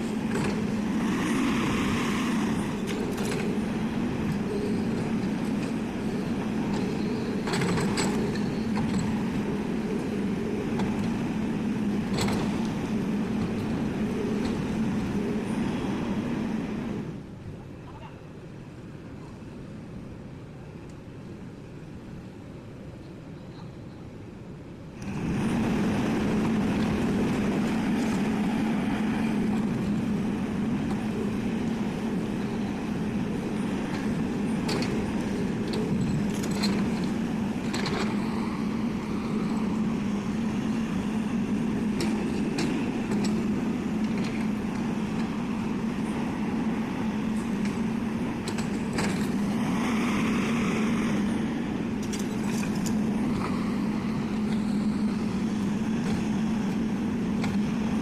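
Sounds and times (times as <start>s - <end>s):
diesel engine humming under load: 0.0s - 17.2s, 25.0s - 58.0s
machine clanks and clicks: 6.7s - 9.1s, 12.1s - 12.6s, 33.9s - 38.2s, 48.4s - 49.4s.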